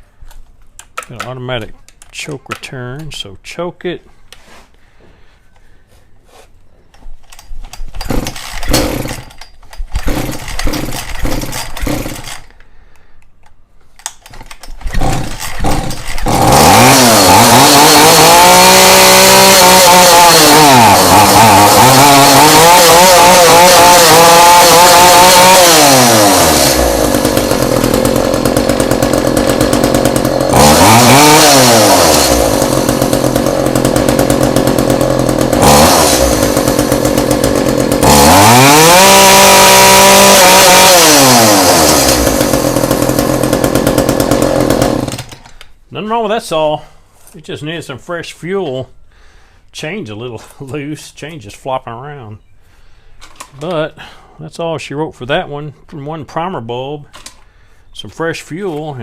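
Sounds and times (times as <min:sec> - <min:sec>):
starter cord pulls: 0:07.2 - 0:12.5, 0:13.4 - 0:45.7
chainsaw revving and idling: 0:08.0 - 0:12.5, 0:14.8 - 0:45.4.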